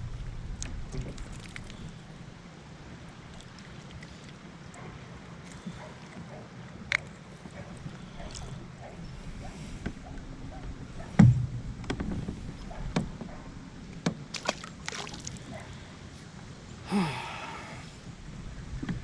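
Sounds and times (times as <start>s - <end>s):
water sloshing against kayak: 0.1s - 16.6s
knocks on the boat: 11.0s - 13.3s.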